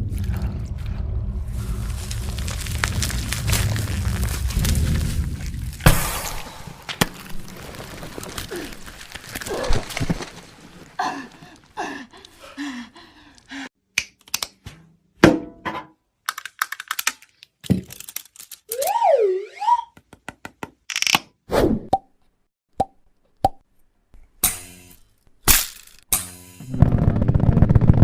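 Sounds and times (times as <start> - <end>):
wobbling whistle-like glide: 18.7 - 20.0.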